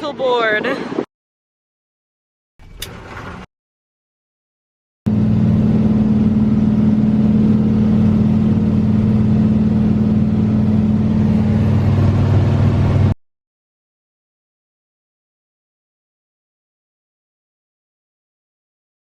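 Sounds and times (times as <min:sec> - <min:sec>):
seaplane engine and propeller drone: 0:00.0 - 0:01.0, 0:02.6 - 0:03.4, 0:05.1 - 0:13.2.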